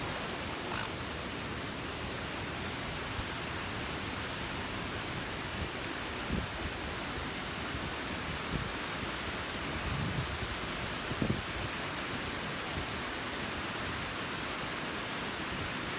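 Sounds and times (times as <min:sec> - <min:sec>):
waterfall rushing: 0:00.0 - 0:01.9.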